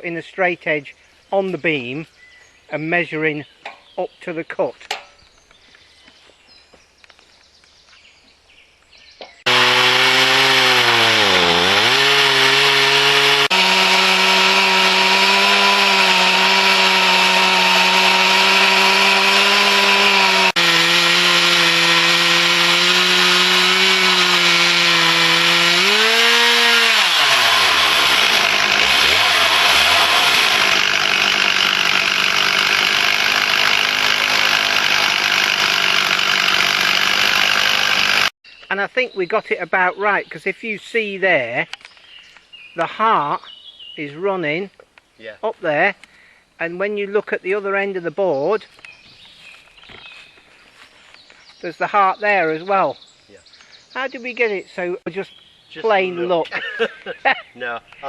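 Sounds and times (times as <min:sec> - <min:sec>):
chainsaw ripping log at high revs: 0:09.4 - 0:38.4.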